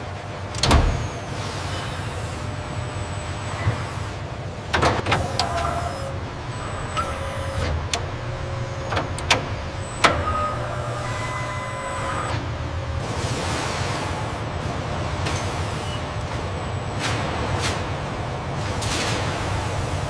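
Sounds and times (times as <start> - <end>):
machinery low hum: 0.0 - 20.0
motor whines: 5.1 - 13.1
sharp clicks and knocks: 7.0 - 10.3.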